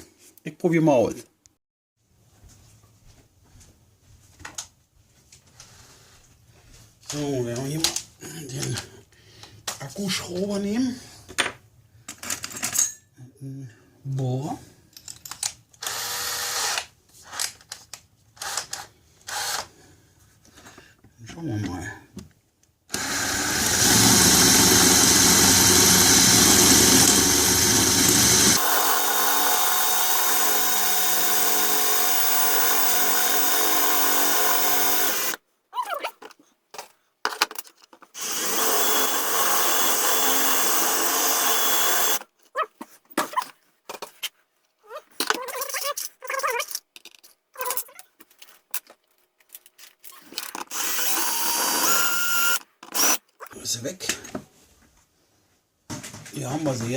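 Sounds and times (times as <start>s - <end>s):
cordless drill boring: 15.8s - 17.4s, 18.4s - 19.7s, 22.9s - 35.4s, 38.2s - 42.2s, 50.6s - 53.3s.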